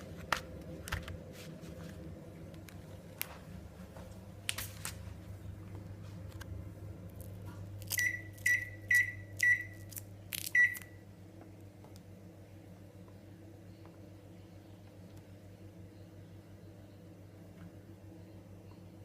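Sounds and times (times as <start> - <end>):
microwave keypad beeps: 7.9 - 9.9, 10.5 - 11.0.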